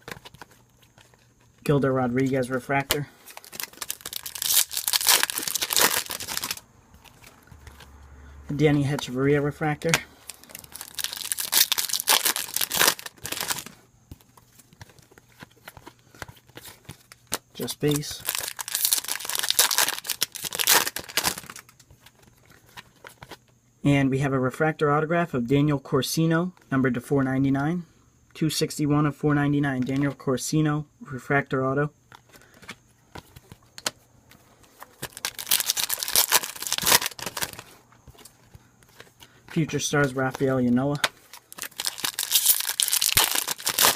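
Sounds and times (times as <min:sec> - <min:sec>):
cards clicking and tapping: 0:00.0 - 0:03.8, 0:11.5 - 0:18.1, 0:32.1 - 0:35.2
foil wrapper crinkling: 0:00.0 - 0:07.8, 0:09.9 - 0:23.3, 0:34.6 - 0:43.9.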